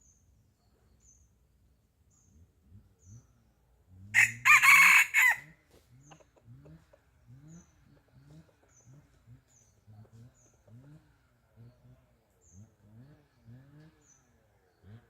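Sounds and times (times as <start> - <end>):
rooster crowing: 4.2 - 5.6
hens clucking: 5.7 - 7.2.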